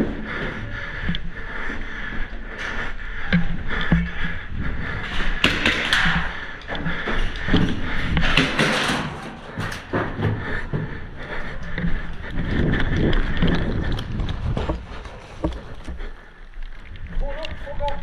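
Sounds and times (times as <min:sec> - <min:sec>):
wind on microphone: 0:11.8 - 0:16.1.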